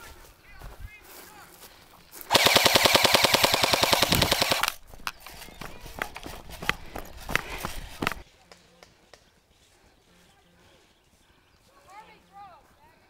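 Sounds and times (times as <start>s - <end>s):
airsoft gun full-auto burst: 2.3s - 4.8s
sharp clicks: 2.3s - 5.4s.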